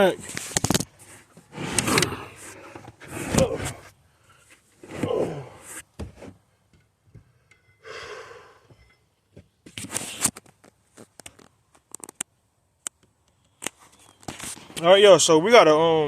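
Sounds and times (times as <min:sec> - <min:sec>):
objects scraping: 0:00.2 - 0:06.4.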